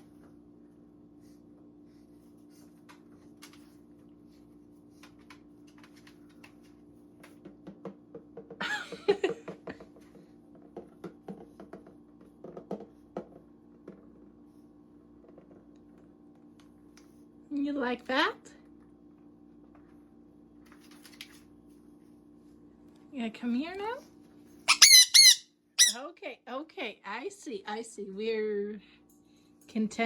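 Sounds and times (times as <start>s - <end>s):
parrot squawking: 24.7s - 26.0s.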